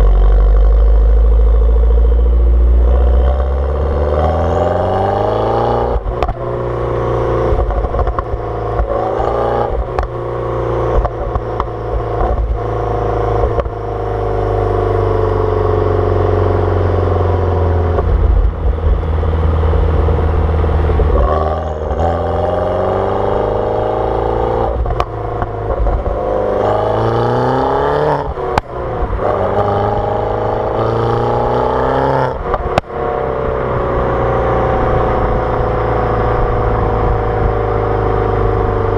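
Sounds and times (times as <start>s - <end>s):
car engine accelerating: 0.0s - 38.9s
exhaust crackles and pops: 5.9s - 6.6s, 7.5s - 10.2s, 10.9s - 12.7s, 13.4s - 13.8s, 17.9s - 19.3s, 24.7s - 26.7s, 28.1s - 30.2s, 32.3s - 33.0s.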